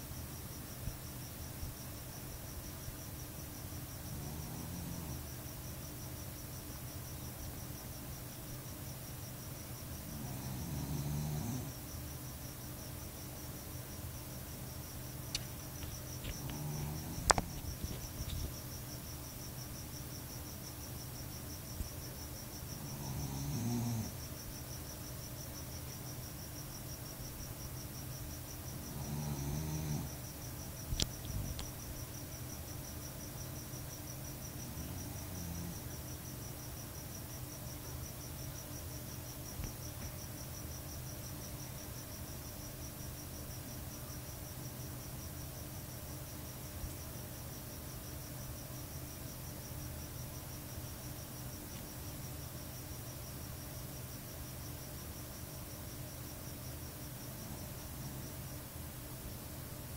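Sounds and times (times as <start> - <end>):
dog snoring: 4.1 - 5.3, 10.1 - 11.8, 16.3 - 18.2, 22.8 - 24.2, 28.7 - 30.2, 34.6 - 35.9.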